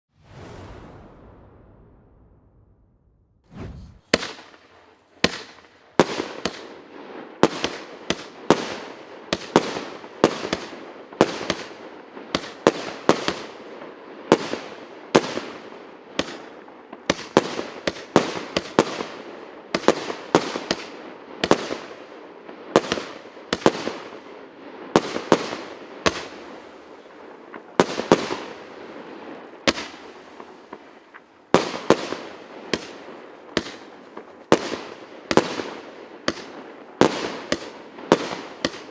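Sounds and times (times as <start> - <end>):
fireworks bangs: 0.1 - 8.8, 24.9 - 38.9.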